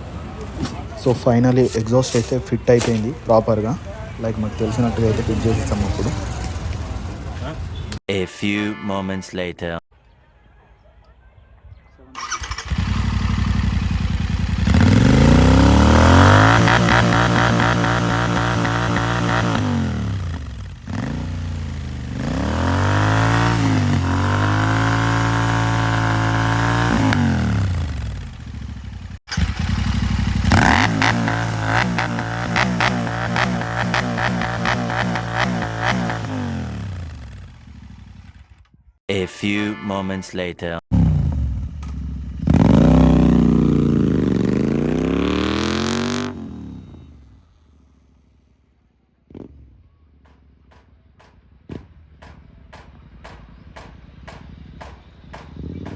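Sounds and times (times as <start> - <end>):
motorcycle engine revving: 0.0 - 8.0, 12.2 - 38.7, 40.9 - 48.6, 49.3 - 49.8, 55.3 - 55.9.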